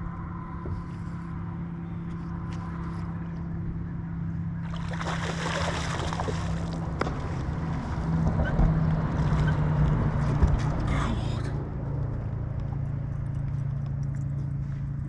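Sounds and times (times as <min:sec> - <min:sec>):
boat motor humming: 0:00.0 - 0:15.0
water rushing: 0:04.6 - 0:07.5.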